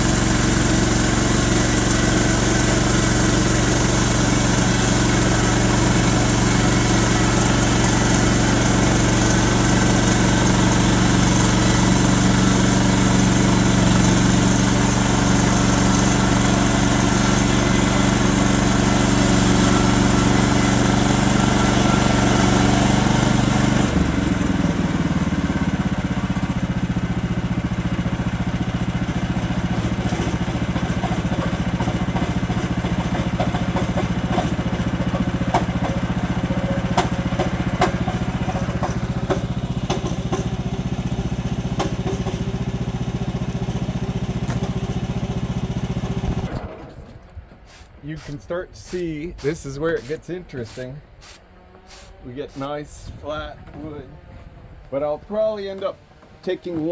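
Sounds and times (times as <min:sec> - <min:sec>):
sawmill engine running: 0:00.0 - 0:56.9
saw blade cutting hiss: 0:47.7 - 0:52.8.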